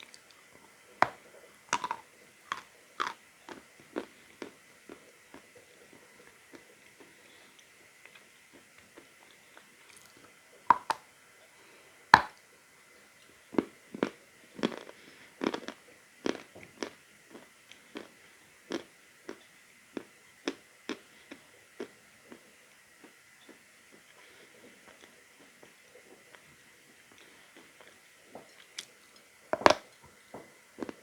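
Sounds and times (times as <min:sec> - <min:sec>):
chalk crunching while chewed: 0:00.0 - 0:11.0.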